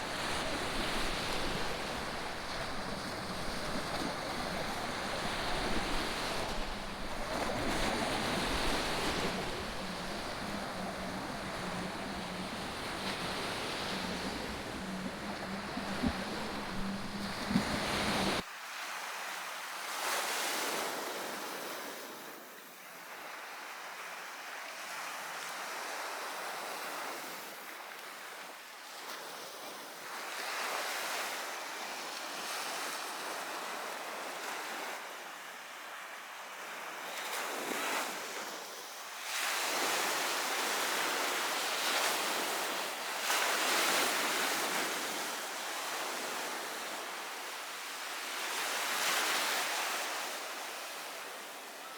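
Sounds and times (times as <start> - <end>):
sea waves breaking on beach: 0.0 - 18.5, 39.2 - 51.8.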